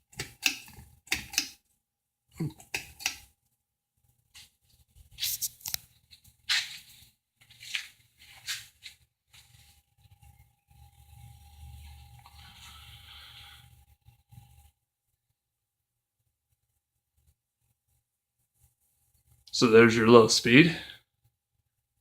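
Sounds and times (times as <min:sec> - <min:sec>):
switch clicks: 0:00.2 - 0:01.6, 0:02.6 - 0:03.2
rustling handling noises: 0:04.3 - 0:09.8.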